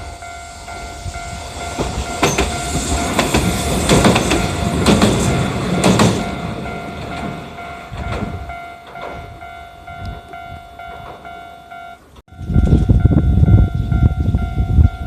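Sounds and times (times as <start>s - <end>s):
level-crossing warning bell: 0.0s - 15.0s
train wheels clacking over rail joints: 1.5s - 9.5s.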